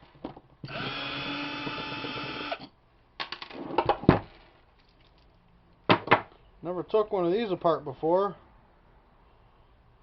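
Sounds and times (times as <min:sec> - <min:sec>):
handheld power tool motor: 0:00.7 - 0:02.7.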